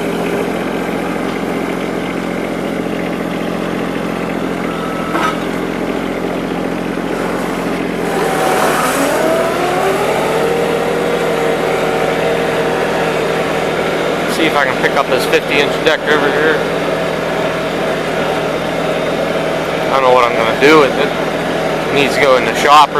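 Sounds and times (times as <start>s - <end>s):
garden tractor engine running: 0.0s - 22.9s.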